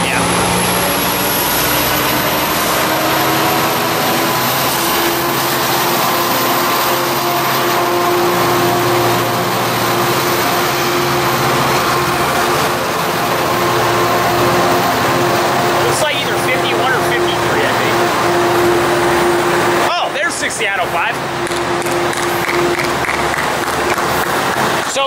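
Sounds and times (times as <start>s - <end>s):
faint high whine rising: 0.0s - 24.2s
locomotive diesel engine: 0.0s - 25.0s.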